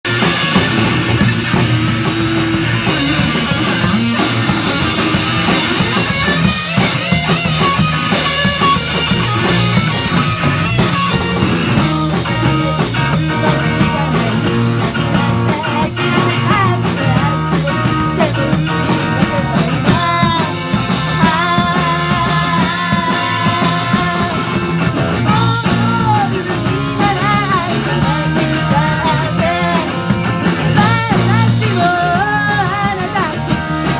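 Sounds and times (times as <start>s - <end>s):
drum kit beat: 0.0s - 33.9s
electric guitar: 0.0s - 33.9s
person singing lead vocal: 1.3s - 6.1s, 11.7s - 33.9s.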